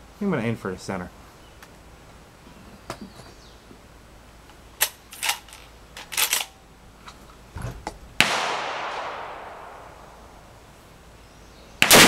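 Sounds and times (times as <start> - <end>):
gunshot with echo: 8.2 - 10.0.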